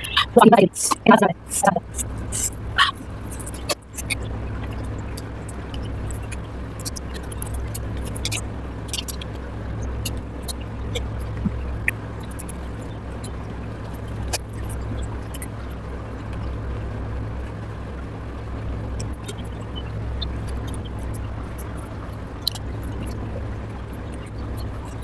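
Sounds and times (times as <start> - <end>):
steady low hum: 0.0 - 25.0
wet mouth clicks and chewing: 1.6 - 15.5, 19.0 - 25.0.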